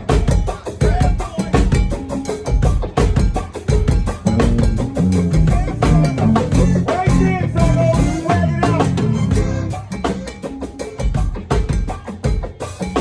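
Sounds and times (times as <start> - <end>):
drums and percussion beat: 0.0 - 13.0
bass line: 4.2 - 10.0.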